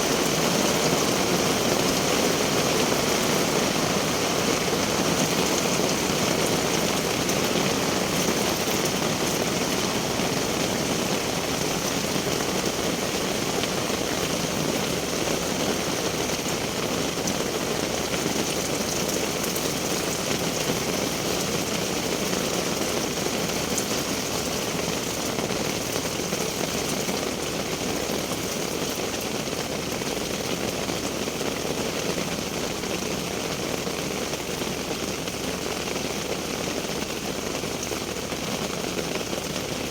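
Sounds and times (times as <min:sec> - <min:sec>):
steady rain hiss: 0:00.0 - 0:39.9
faint raindrop ticks: 0:13.6 - 0:31.1.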